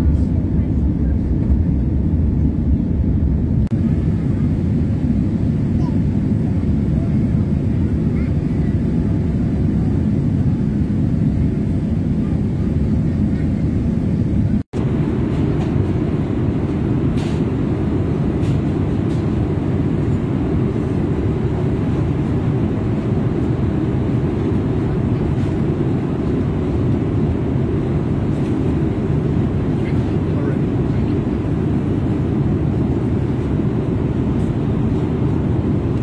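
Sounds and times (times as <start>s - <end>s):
airliner cabin rumble: 0.0s - 36.0s.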